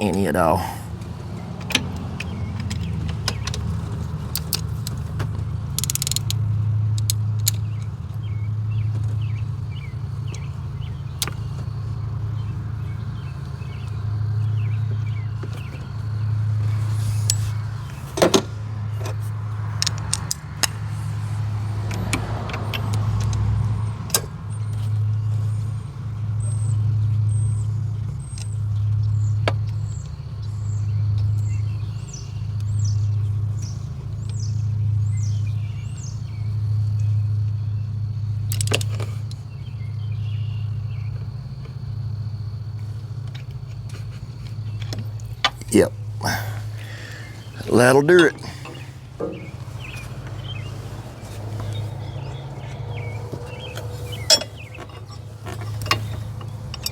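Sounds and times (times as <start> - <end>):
sharp metallic ratchet clicks: 5.7 - 7.6, 54.3 - 56.9.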